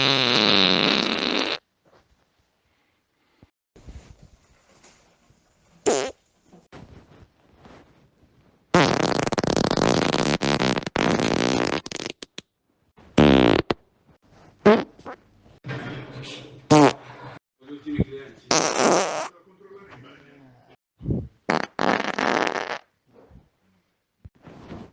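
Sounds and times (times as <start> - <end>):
farts: 0.0 - 1.7, 5.8 - 6.2, 8.7 - 12.4, 13.1 - 13.8, 14.6 - 15.2, 16.7 - 17.0, 18.5 - 19.3, 21.5 - 22.9.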